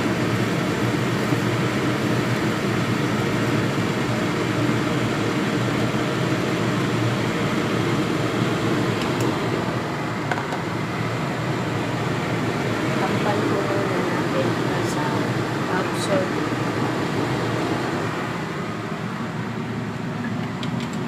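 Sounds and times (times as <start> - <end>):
chicken sizzling in a hot pan: 0.0 - 9.0.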